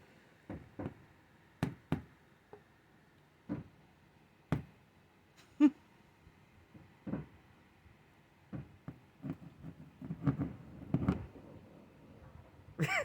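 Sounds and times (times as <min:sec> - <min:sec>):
brush knocking on wall: 0:08.5 - 0:11.3.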